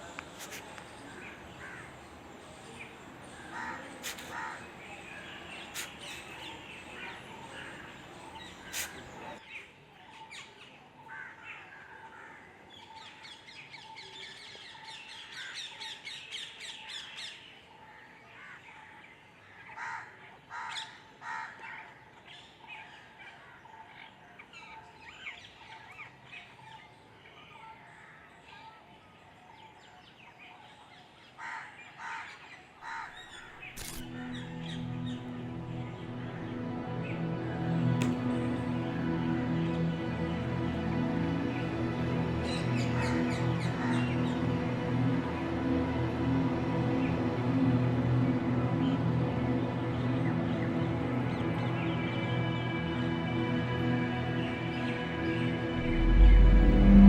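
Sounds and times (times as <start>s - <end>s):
birds chirping and calling: 2.7s - 9.4s
low background rumble: 55.7s - 57.0s.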